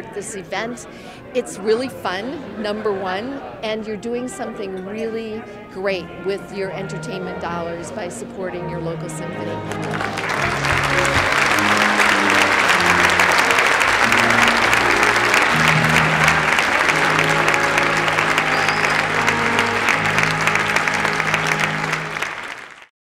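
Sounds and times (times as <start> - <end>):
audience applauding: 9.6 - 22.9.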